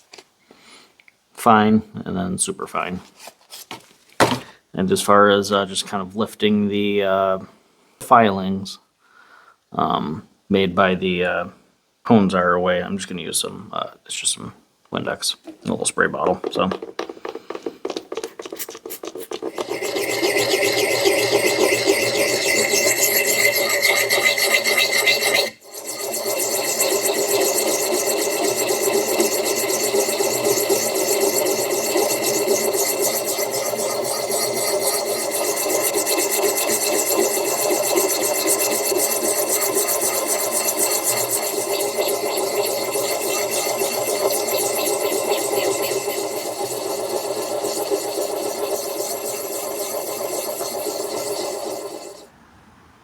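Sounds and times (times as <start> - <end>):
hone scraping axe steel: 15.5 - 52.3.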